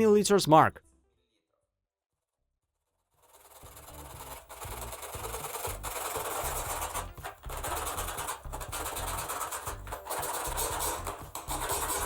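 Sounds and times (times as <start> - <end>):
hacksaw blade sawing plastic: 3.0 - 12.0.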